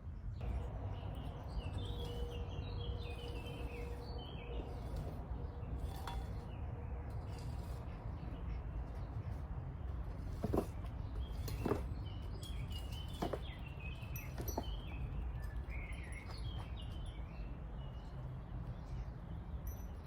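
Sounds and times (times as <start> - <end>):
steady low rumble: 0.0 - 11.4
small birds chirping: 0.1 - 20.0.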